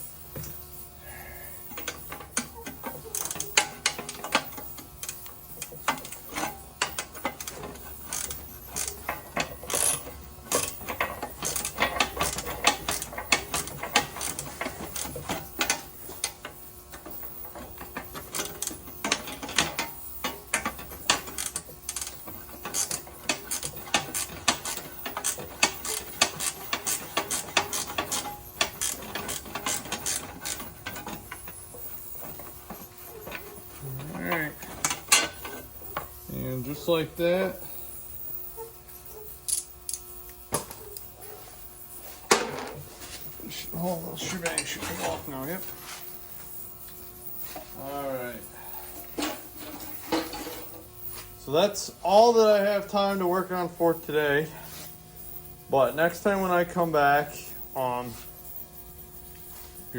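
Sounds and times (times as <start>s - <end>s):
ratchet wrench clicking: 1.7s - 36.2s, 39.1s - 41.1s.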